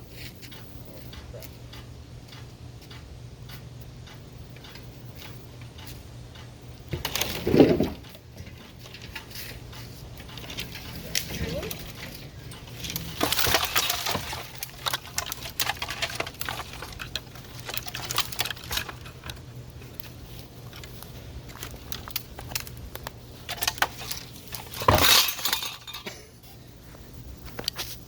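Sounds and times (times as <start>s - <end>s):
steady low hum: 0.0s - 28.0s
ceiling fan being smashed: 6.9s - 20.2s, 20.8s - 26.3s.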